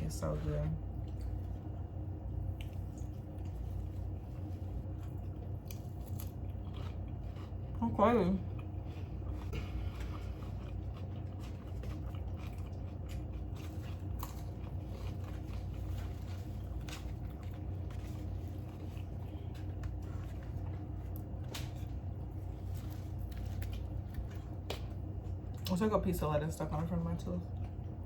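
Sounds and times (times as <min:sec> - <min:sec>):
steady low hum: 0:00.0 - 0:28.0
person chewing food: 0:00.9 - 0:07.8, 0:08.4 - 0:25.7.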